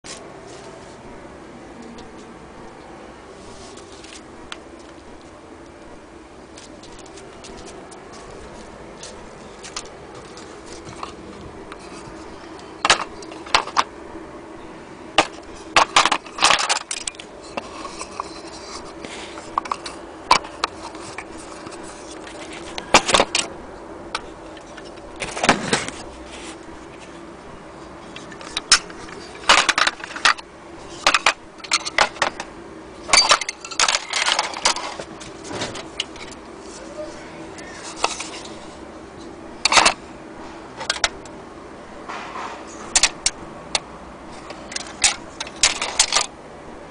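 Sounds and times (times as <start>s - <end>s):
faint steady hum: 0.0s - 46.9s
clock parts clinking: 33.1s - 36.4s, 44.5s - 46.3s.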